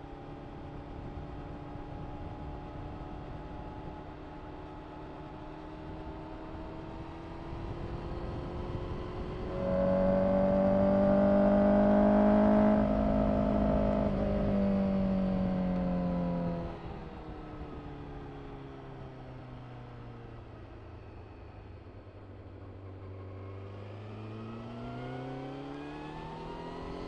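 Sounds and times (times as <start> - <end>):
motorcycle engine revving: 6.6 - 16.9.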